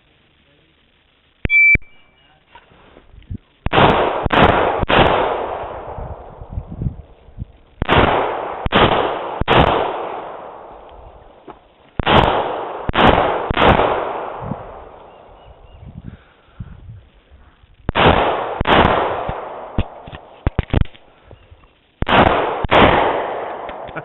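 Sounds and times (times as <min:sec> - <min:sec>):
pistol shots with echo: 0:03.7 - 0:06.2, 0:07.8 - 0:11.2, 0:12.0 - 0:15.2, 0:17.9 - 0:20.9, 0:22.0 - 0:24.0.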